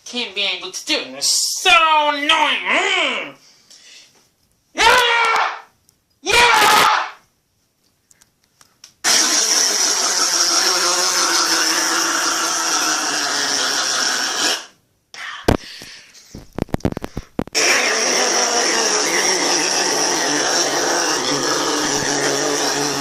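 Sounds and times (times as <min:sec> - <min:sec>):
person straining vocal ah: 0:01.8 - 0:03.4, 0:04.8 - 0:05.6, 0:06.2 - 0:07.1, 0:17.6 - 0:23.0
short sharp noises: 0:06.3 - 0:07.2
hard nose blowing: 0:09.0 - 0:14.8, 0:17.0 - 0:23.0.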